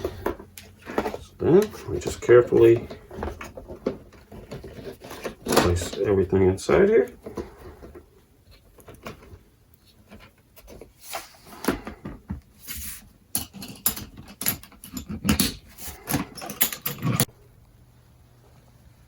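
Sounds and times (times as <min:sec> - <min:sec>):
electrical components rattling in toolbox: 0:00.0 - 0:08.0, 0:13.4 - 0:17.3.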